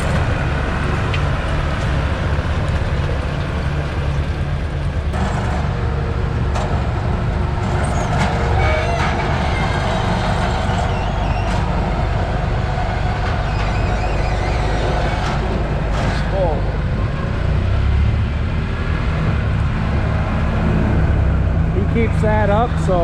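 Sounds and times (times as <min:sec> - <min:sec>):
farm machinery engine running: 0:00.0 - 0:17.6.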